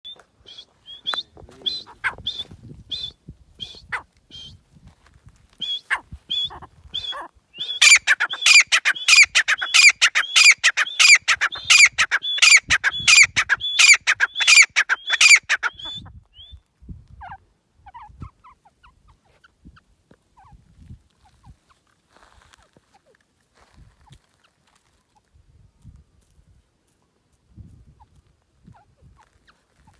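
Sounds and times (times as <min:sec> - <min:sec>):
bird calling shrill notes: 0:05.6 - 0:16.6.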